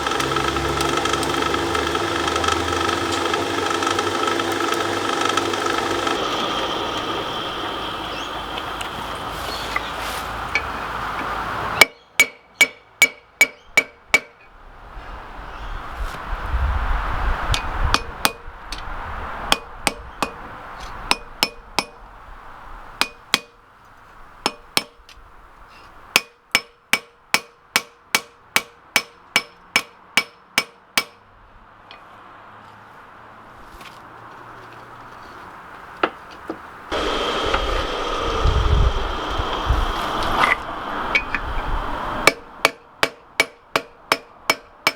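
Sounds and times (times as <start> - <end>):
hammer striking metal on anvil: 11.8 - 14.4, 21.1 - 22.0, 23.0 - 23.6, 24.5 - 25.0, 26.2 - 31.2, 42.2 - 44.9
steady rushing noise: 36.9 - 42.7.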